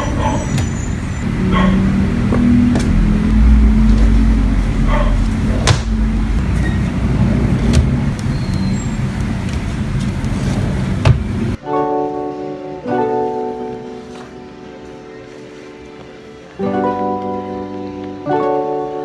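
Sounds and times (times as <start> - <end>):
road noise: 0.0 - 11.6
vehicle engine rumble: 0.0 - 11.6.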